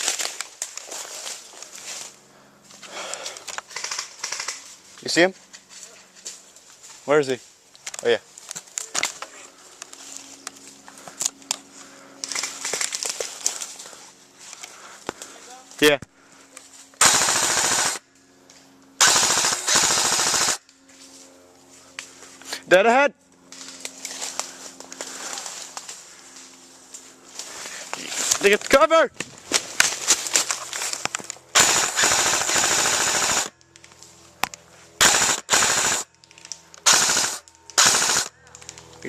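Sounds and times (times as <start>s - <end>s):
electric gun firing bursts: 3.7s - 4.7s, 17.0s - 18.0s, 19.0s - 20.6s, 31.5s - 33.6s, 35.0s - 36.2s, 36.8s - 38.6s.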